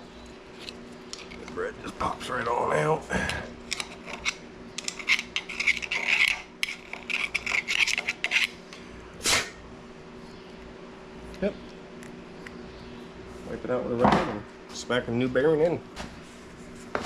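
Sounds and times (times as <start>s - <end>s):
metal tool scraping and clicking: 3.7s - 8.8s.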